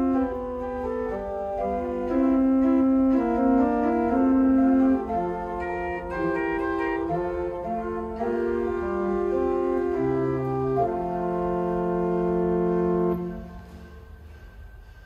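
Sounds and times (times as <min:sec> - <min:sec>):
pipe organ playing chords: 0:00.0 - 0:14.4.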